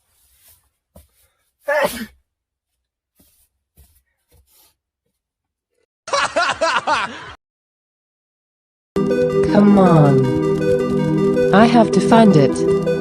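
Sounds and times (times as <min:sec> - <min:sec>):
person laughing: 0:06.1 - 0:07.4.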